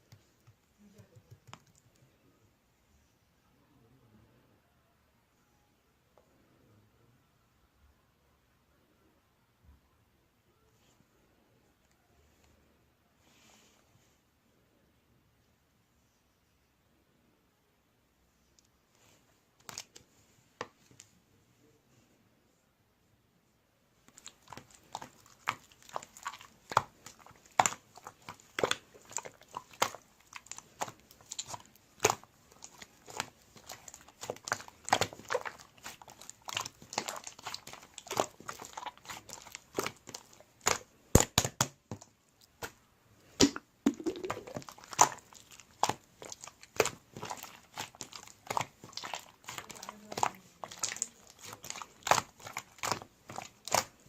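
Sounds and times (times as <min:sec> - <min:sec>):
clay slime clicking and popping: 0:00.1 - 0:02.0, 0:24.0 - 0:42.8, 0:43.4 - 0:54.0.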